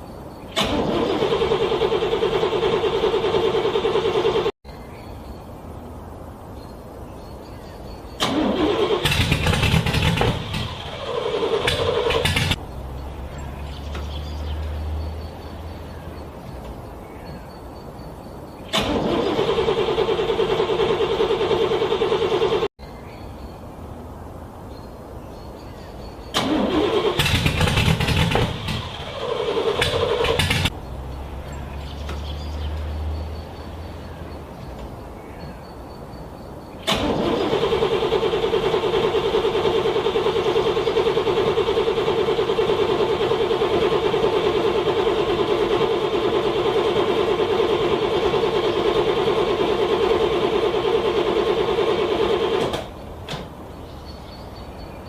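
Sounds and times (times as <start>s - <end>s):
car starter cranking engine: 0.5s - 4.6s, 8.2s - 12.6s, 18.6s - 22.7s, 26.3s - 30.8s, 36.8s - 53.6s.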